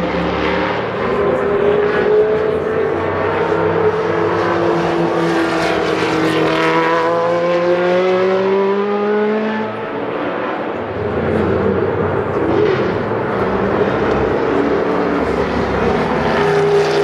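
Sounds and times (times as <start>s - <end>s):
race car engine accelerating: 0.0s - 17.0s.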